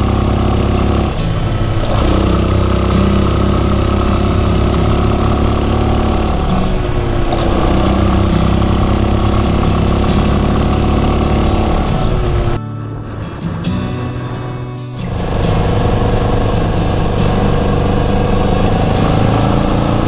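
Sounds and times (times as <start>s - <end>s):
motorcycle engine running: 0.0s - 13.2s, 15.2s - 20.0s.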